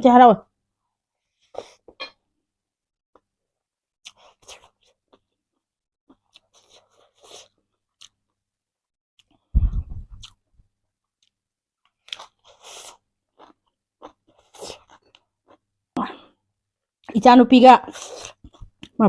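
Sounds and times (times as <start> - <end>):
chewing and crunching food: 4.0 - 5.4, 6.1 - 8.4, 11.0 - 15.7, 17.9 - 19.0
loud low thud: 9.6 - 10.2.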